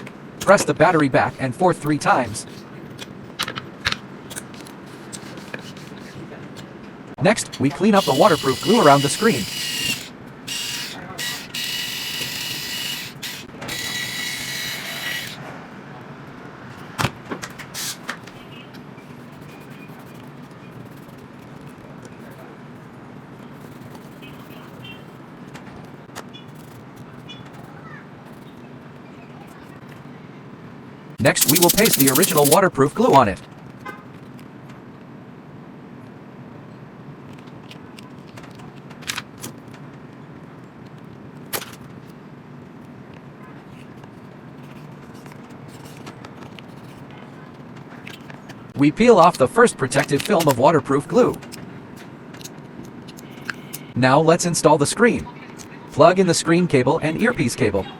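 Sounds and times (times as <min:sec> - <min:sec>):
handheld tool whine: 0:08.0 - 0:15.4, 0:31.3 - 0:32.6
sharp click: 0:31.2 - 0:32.6.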